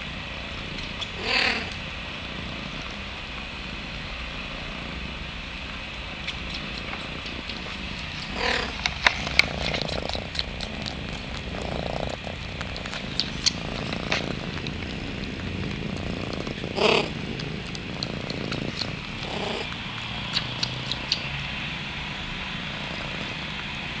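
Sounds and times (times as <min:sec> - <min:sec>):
cats purring: 0:00.0 - 0:24.0
small clicks: 0:17.4 - 0:21.3.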